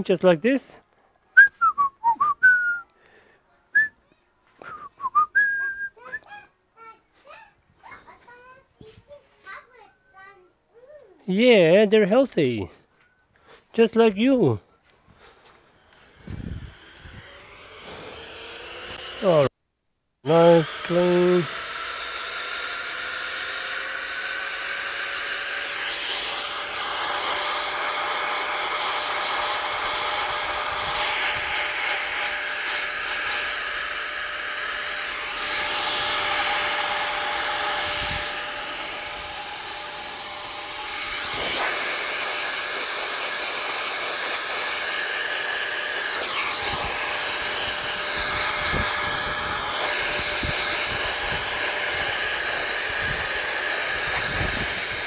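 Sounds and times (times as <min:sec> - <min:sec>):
thin whine: 0:14.2 - 0:19.5, 0:20.2 - 0:55.0
air blower hissing: 0:15.2 - 0:19.5, 0:20.2 - 0:55.0.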